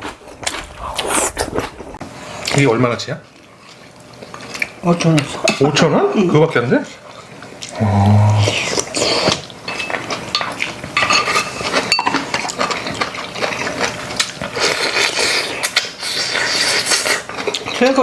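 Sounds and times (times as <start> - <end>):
tableware clinking against bowls: 5.4 - 5.8, 9.6 - 13.0.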